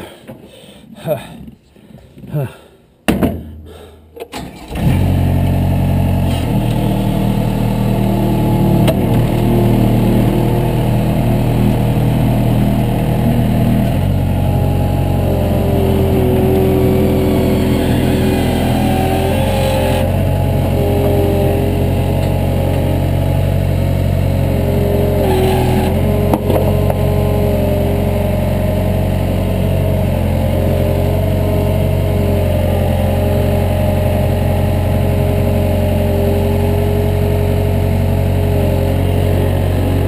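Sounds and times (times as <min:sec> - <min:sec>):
heavy equipment engine running: 0:04.5 - 0:40.0.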